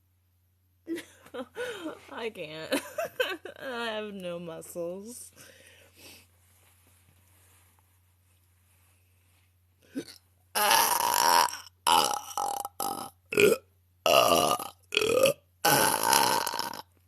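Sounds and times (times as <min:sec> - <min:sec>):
woman belching: 0:10.0 - 0:16.9.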